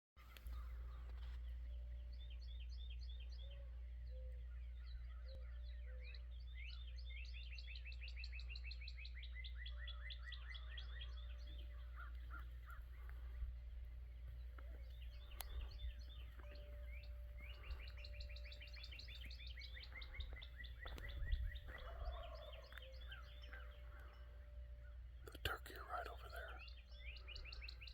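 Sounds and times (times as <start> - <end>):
songbirds trilling and chirping: 0.2 - 27.9
steady low rumble: 11.5 - 27.9.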